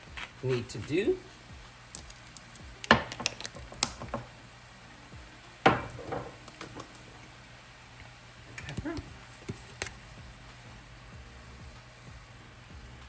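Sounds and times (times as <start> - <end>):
kitchen items clicking and knocking: 2.8 - 4.3, 5.7 - 7.0.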